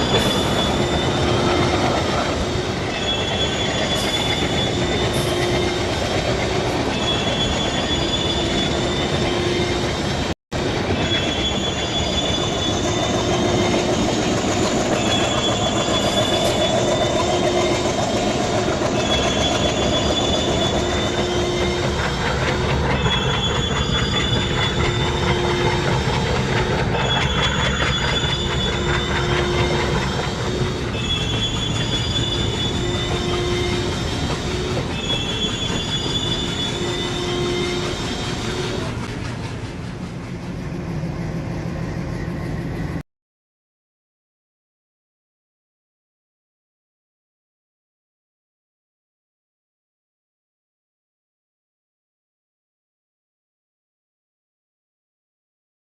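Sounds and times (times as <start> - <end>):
high-pitched wheel squeal: 0.0 - 6.2, 6.8 - 10.1, 11.0 - 39.0
diesel train rumbling: 0.0 - 43.0.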